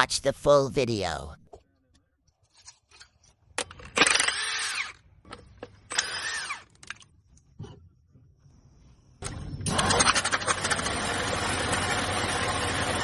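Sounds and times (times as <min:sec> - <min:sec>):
power tool bursts: 0:03.9 - 0:05.0, 0:05.9 - 0:06.7, 0:09.6 - 0:13.0.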